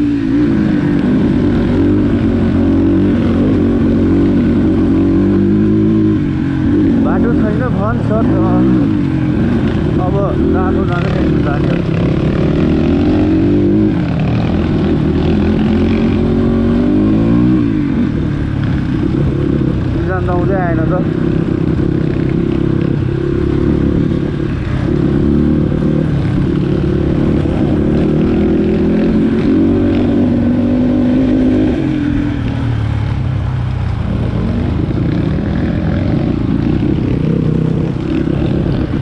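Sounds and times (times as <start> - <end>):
dirt bike engine revving: 0.0 - 32.4, 33.9 - 39.0.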